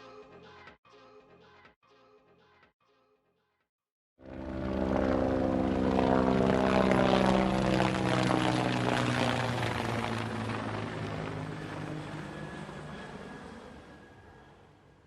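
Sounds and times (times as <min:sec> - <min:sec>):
propeller aircraft engine drone: 0:04.2 - 0:15.0.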